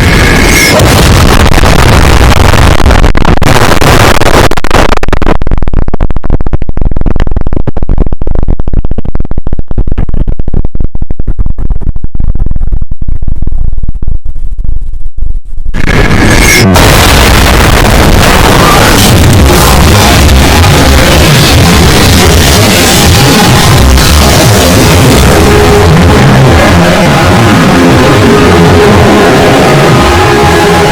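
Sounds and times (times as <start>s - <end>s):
harsh distorted hiss: 0.0s - 7.6s, 15.8s - 30.9s
deep crackling rumble: 0.0s - 30.9s.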